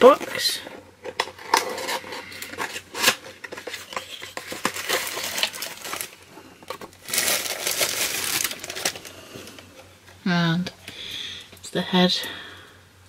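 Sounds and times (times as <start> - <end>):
packaging crinkling: 0.0 - 9.7.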